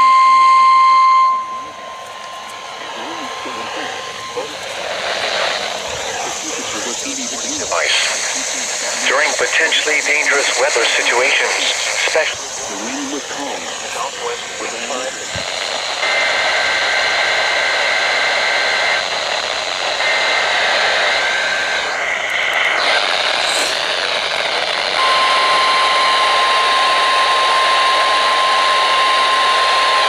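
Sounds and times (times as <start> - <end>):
single-tone warning alarm: 0.0 - 5.8, 15.5 - 30.0
two-tone data warble: 0.0 - 30.0
radio hiss: 0.5 - 30.0.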